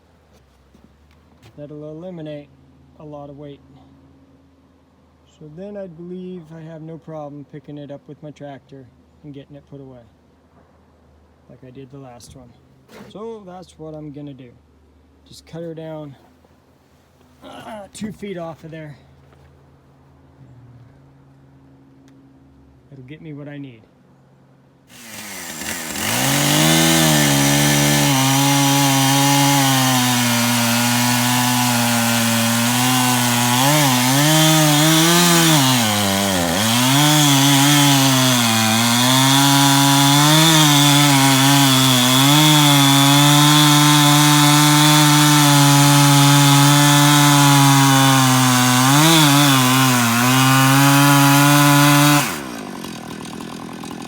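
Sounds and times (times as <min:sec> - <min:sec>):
chainsaw cutting log: 0:24.9 - 0:54.0.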